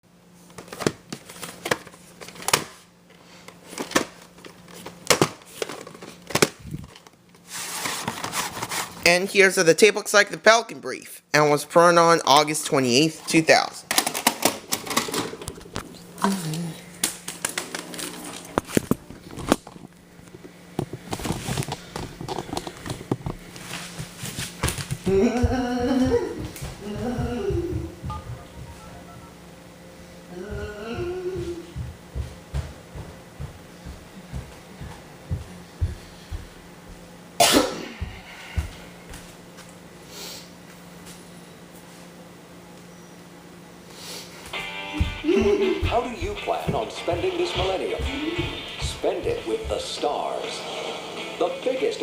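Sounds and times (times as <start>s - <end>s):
faint steady hum: 0.1s - 52.0s
music from tape playback: 44.6s - 52.0s.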